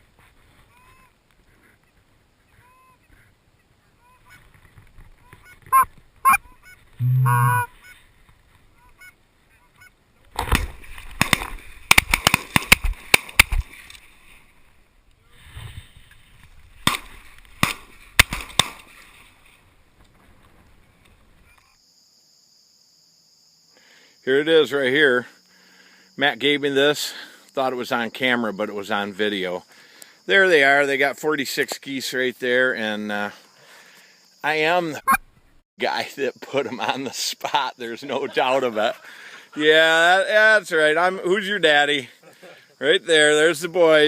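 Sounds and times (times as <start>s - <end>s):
geese honking: 5.3s - 8.0s.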